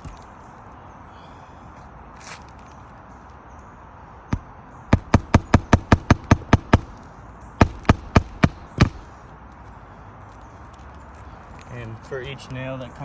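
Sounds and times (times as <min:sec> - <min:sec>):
hammer striking nails: 0:04.3 - 0:07.0, 0:07.6 - 0:09.1.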